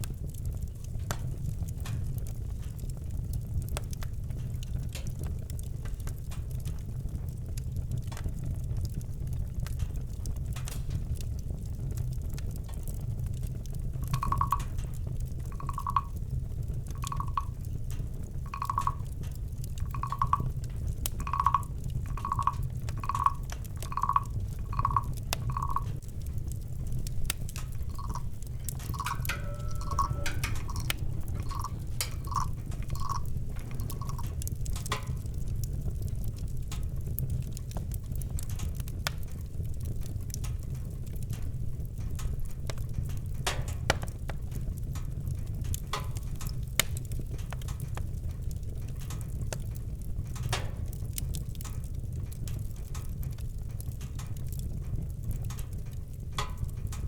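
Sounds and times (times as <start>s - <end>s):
campfire crackling and popping: 0.0s - 57.0s
steady low rumble: 21.1s - 35.6s.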